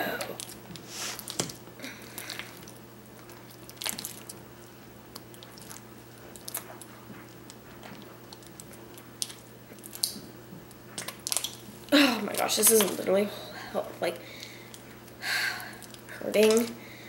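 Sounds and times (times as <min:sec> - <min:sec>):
slime squishing: 0:00.0 - 0:16.8
small crackling pops: 0:05.1 - 0:13.0.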